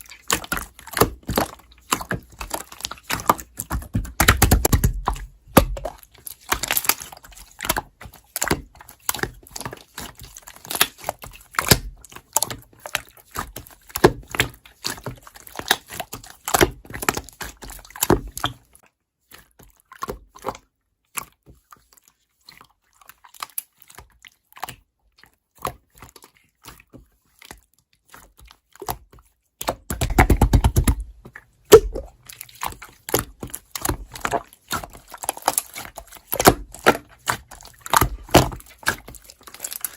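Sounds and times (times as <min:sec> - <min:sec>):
slime squelching: 0:00.0 - 0:39.9
sticky slime clicks and pops: 0:31.7 - 0:32.1.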